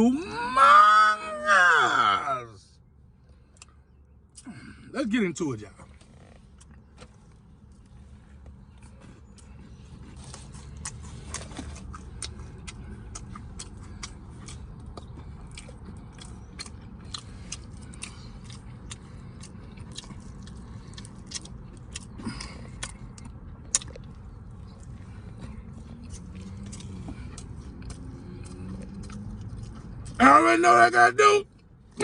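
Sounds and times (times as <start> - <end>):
person chewing food: 6.0 - 30.2.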